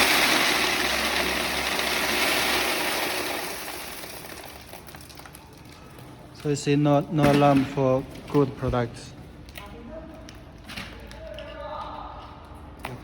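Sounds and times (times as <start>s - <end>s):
coffee beans pouring through metal: 0.0s - 5.6s.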